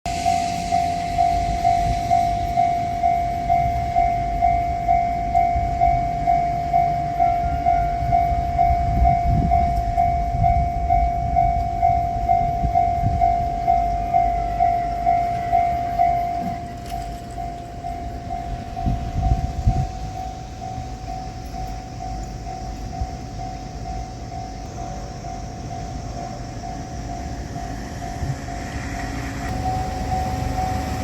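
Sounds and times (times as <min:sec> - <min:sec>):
railroad crossing alarm clanging: 0:00.1 - 0:31.0.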